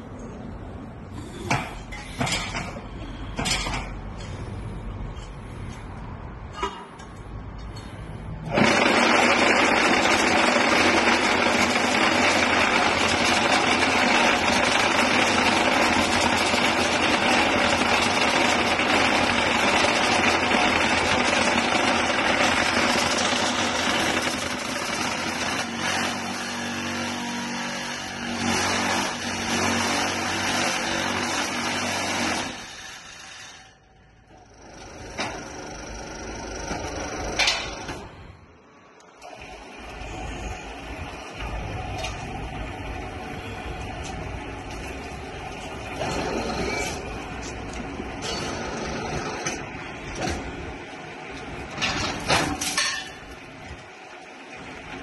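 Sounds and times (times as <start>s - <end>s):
brick making machine din: 8.4s - 33.8s.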